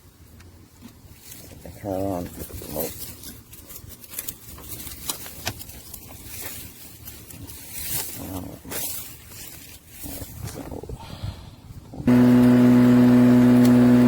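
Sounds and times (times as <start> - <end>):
rustling and scraping: 0.0 - 11.0
sharp clicks of controls: 12.1 - 14.0.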